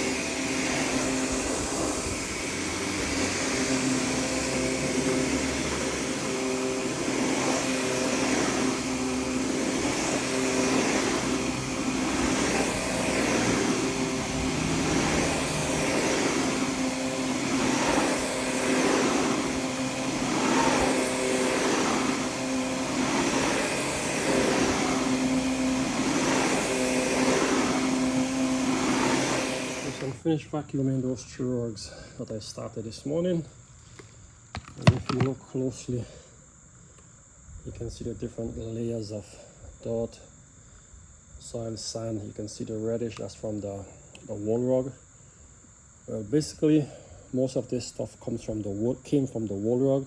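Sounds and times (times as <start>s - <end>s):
vacuum cleaner on a rug: 0.0s - 30.3s, 34.0s - 35.5s.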